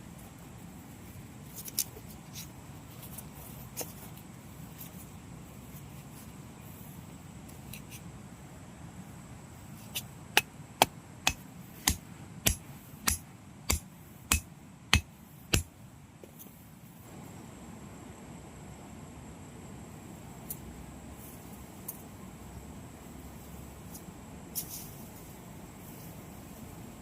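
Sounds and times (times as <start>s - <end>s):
sharp knocks: 10.4s - 15.7s.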